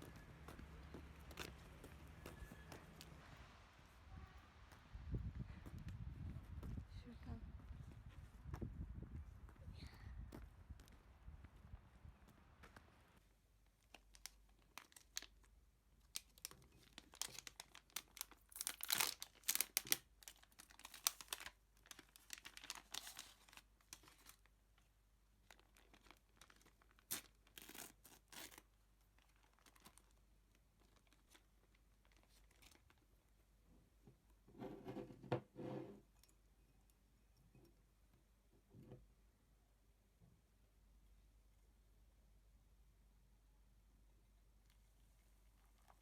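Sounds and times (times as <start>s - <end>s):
crinkling and rustling: 0.0s - 37.0s, 44.6s - 46.0s.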